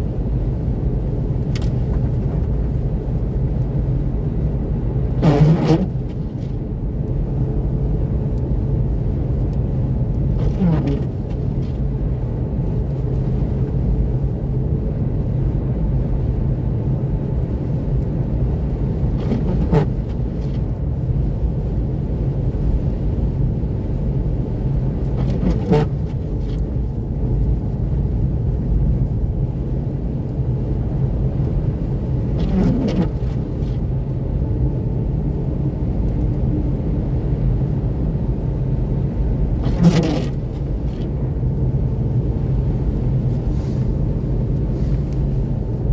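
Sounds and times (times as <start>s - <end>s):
tyre and road noise: 4.8s - 6.8s, 10.2s - 13.4s, 18.9s - 20.8s, 24.0s - 27.0s, 30.0s - 36.5s, 37.7s - 45.9s.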